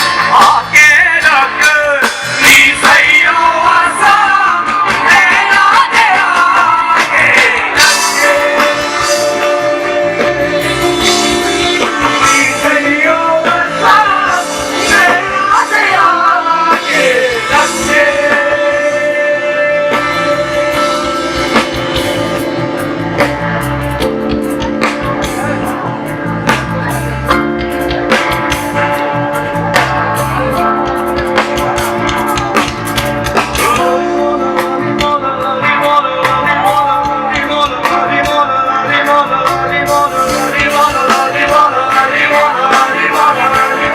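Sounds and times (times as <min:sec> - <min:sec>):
live band music: 0:00.0 - 0:43.9
ornamented melody line: 0:00.0 - 0:43.9.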